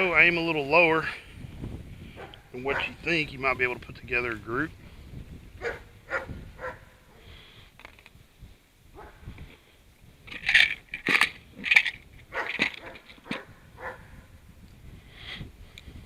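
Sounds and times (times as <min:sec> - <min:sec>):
dog barking: 0:02.2 - 0:03.0, 0:05.6 - 0:07.0, 0:09.0 - 0:09.2, 0:12.3 - 0:14.1.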